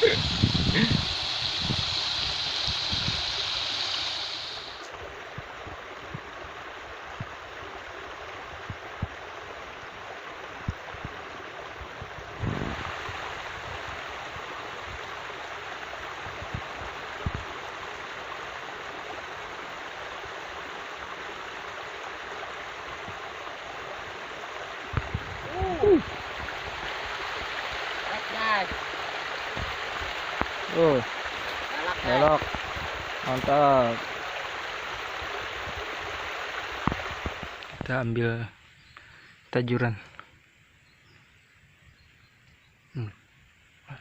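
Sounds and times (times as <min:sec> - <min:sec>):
higher hiss: 0:00.0 - 0:04.9
river water rushing: 0:00.0 - 0:37.8.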